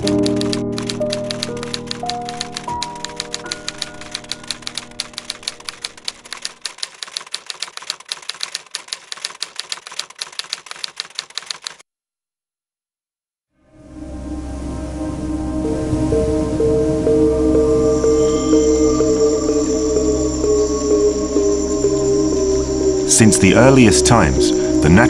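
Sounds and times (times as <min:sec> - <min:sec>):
typewriter keystrokes: 0:00.0 - 0:11.8
music tones: 0:13.9 - 0:25.0.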